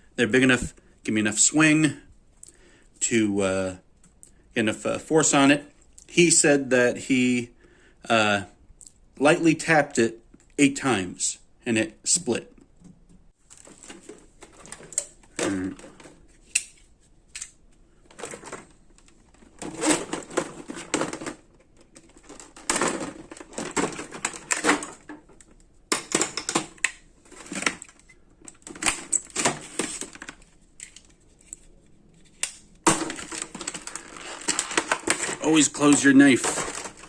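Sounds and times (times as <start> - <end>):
plastic packaging crackling and clicking: 26.6 - 37.0.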